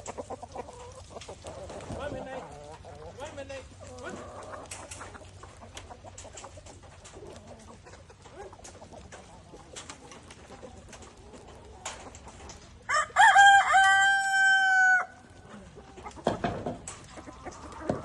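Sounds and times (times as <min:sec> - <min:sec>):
chickens clucking: 0:00.0 - 0:18.0
rooster crowing: 0:12.9 - 0:15.2.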